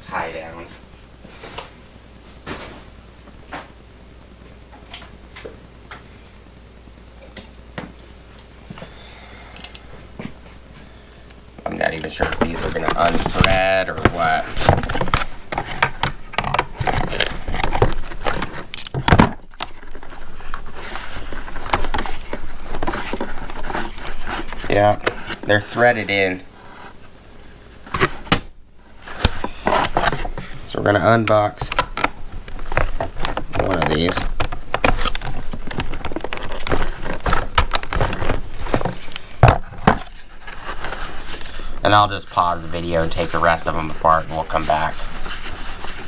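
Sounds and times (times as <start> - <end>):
hands unpacking straps rustling: 9.6 - 46.0.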